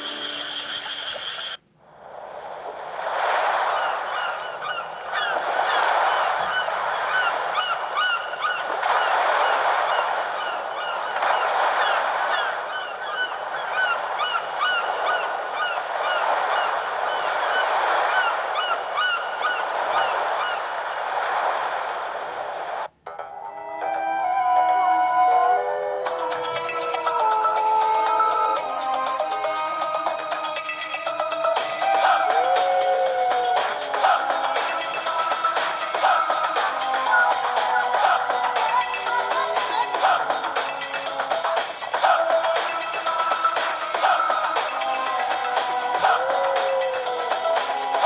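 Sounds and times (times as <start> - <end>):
birds calling: 0.0 - 1.6, 3.7 - 20.8, 25.2 - 48.0
background noise: 0.0 - 35.1.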